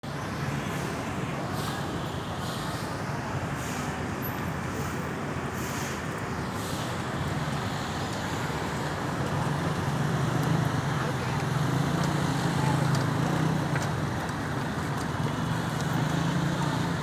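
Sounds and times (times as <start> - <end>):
road traffic noise: 0.0 - 17.0
vehicle engine running: 7.0 - 17.0.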